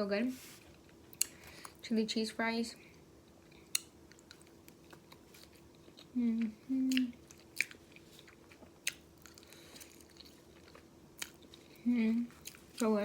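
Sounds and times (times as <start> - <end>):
chewing food close-up: 3.3 - 13.0
person humming mm: 6.1 - 7.2.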